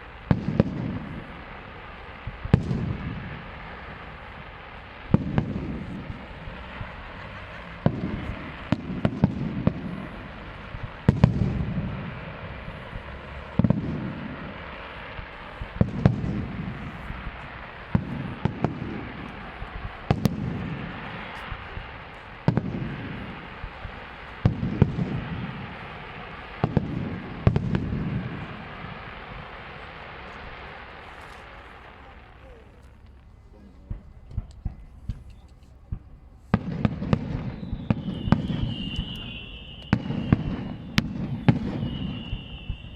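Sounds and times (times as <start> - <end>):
low rolling rumble: 0.8 - 31.0.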